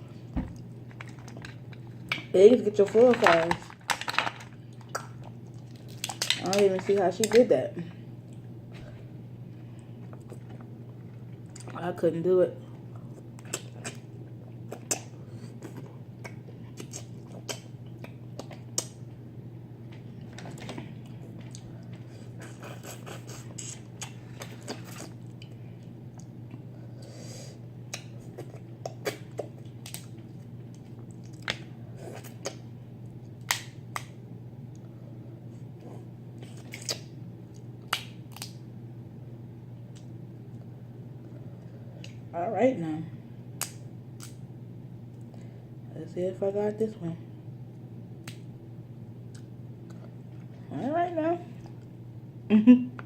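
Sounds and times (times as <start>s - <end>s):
steady low hum: 0.0s - 53.0s
wet mouth smacks: 36.6s - 37.1s.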